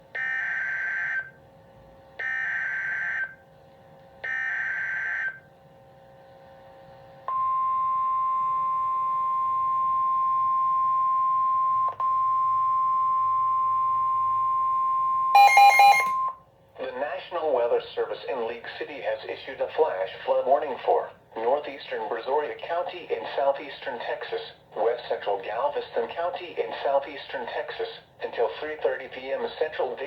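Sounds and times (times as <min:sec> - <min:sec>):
long steady attention tone: 0:15.4 - 0:16.4.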